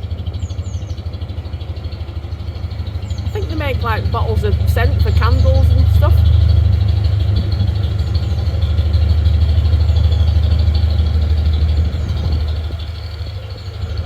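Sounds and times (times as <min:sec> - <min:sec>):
diesel boat engine droning: 0:00.0 - 0:14.0.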